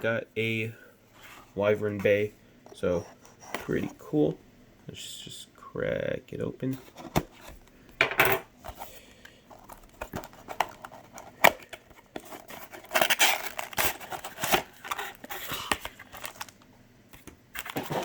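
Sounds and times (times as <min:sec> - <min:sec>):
packaging rustling and crinkling: 0:09.5 - 0:18.0
cardboard tearing and clicks: 0:09.6 - 0:16.5, 0:17.5 - 0:18.0.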